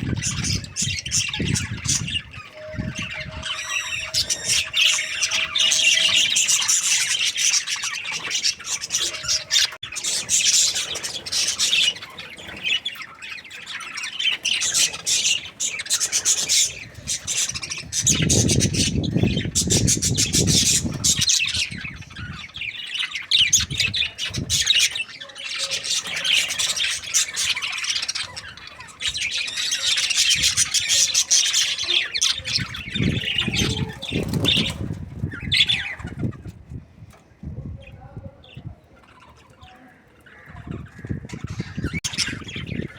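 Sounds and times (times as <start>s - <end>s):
budgerigars chattering: 0.0s - 36.5s, 37.8s - 42.9s.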